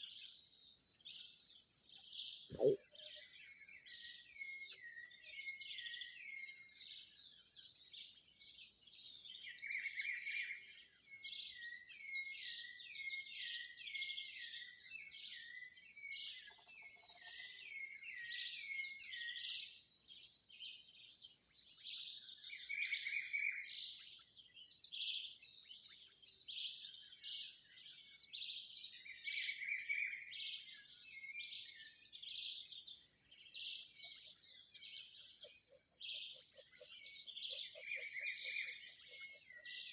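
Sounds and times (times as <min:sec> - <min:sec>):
birds chirping: 0:02.5 - 0:02.8
bird song bursts: 0:02.5 - 0:03.0.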